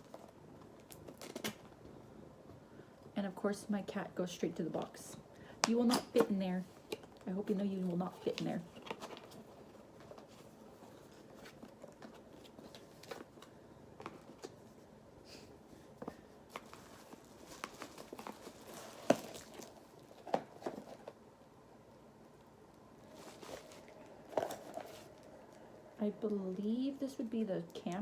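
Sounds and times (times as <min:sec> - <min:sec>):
packaging rustling and crinkling: 0:00.0 - 0:01.8, 0:05.6 - 0:14.9, 0:15.8 - 0:21.2, 0:23.0 - 0:25.6.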